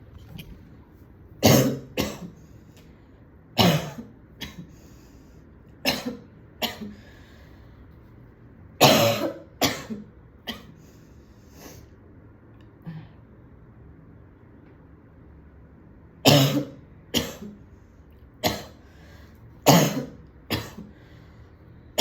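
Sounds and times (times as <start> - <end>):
woman coughing: 1.4 - 2.4, 3.6 - 4.7, 5.8 - 7.0, 8.8 - 10.8, 16.3 - 17.6, 18.4 - 18.8, 19.6 - 20.9.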